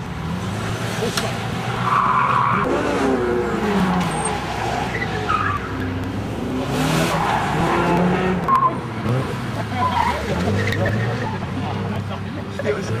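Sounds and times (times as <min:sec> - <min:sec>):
engine revving: 0:02.5 - 0:05.3, 0:06.0 - 0:11.4.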